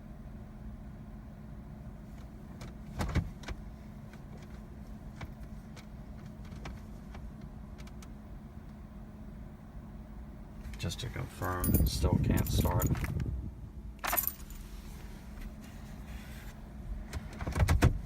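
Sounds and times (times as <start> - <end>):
faint steady hum: 0.0 - 17.5.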